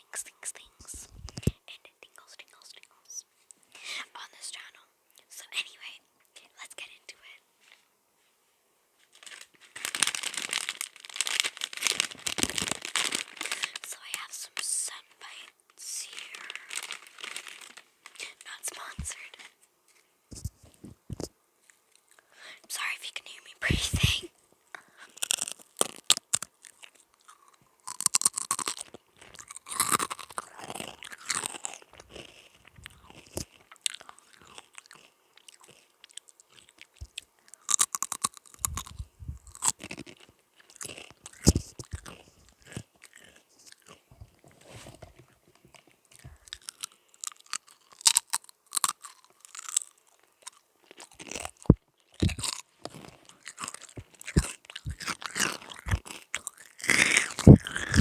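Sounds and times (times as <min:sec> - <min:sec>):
person crunching crisps: 0:09.1 - 0:14.4, 0:16.0 - 0:19.6, 0:24.8 - 0:44.0, 0:46.2 - 0:58.0.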